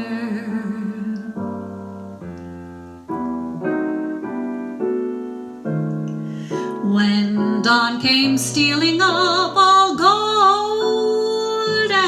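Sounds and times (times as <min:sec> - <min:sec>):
piano chords: 0:00.0 - 0:12.0.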